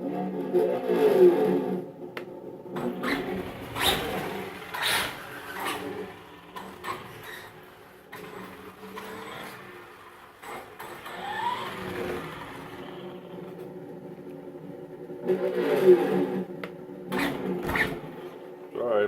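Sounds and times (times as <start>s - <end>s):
simulated engine sound from speaker: 2.6s - 19.0s.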